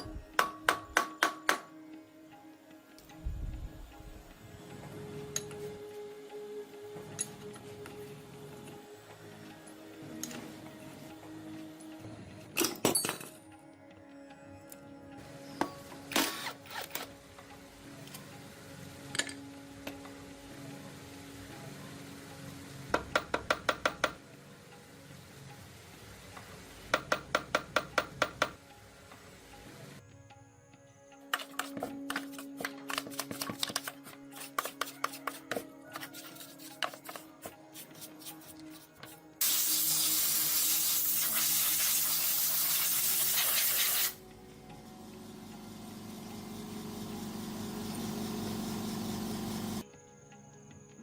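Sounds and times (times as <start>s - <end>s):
pressurised spray hissing: 39.4s - 44.2s.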